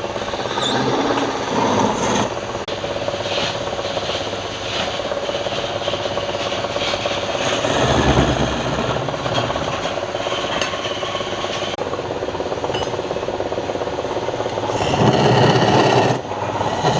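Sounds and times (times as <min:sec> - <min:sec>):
tool rasping on wood: 0:00.4 - 0:02.7, 0:14.7 - 0:16.9.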